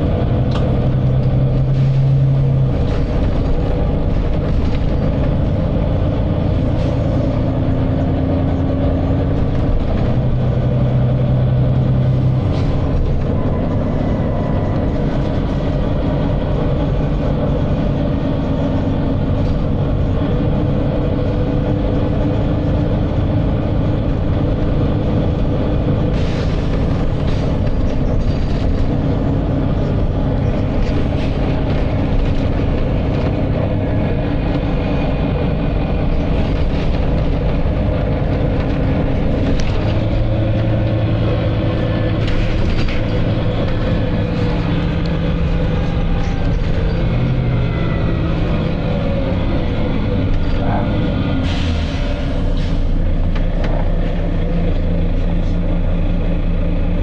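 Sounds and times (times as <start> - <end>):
bus diesel engine droning: 0.0 - 57.0.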